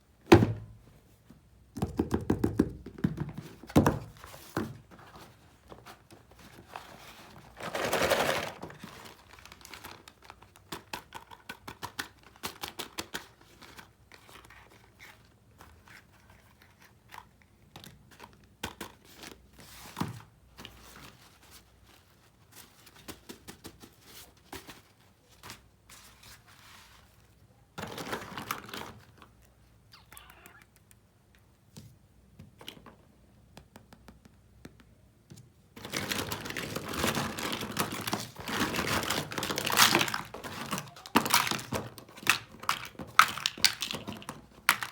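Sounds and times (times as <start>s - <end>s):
packaging crinkling: 7.5s - 10.9s, 35.8s - 44.9s
small plastic pieces clicking: 36.3s - 44.9s.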